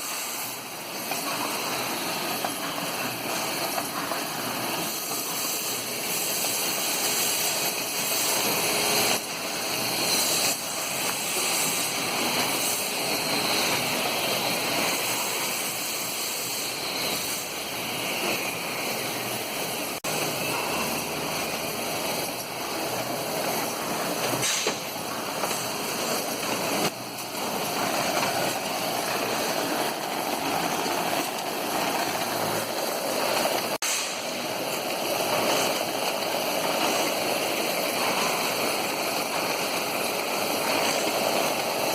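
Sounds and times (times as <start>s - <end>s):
air compressor running: 0.0s - 41.9s
air hiss: 27.4s - 35.8s.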